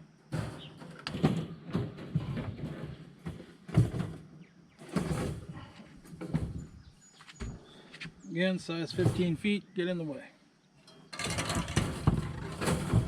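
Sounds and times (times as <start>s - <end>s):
wire mesh panels rattling and clanking: 4.8s - 6.6s, 10.9s - 13.0s.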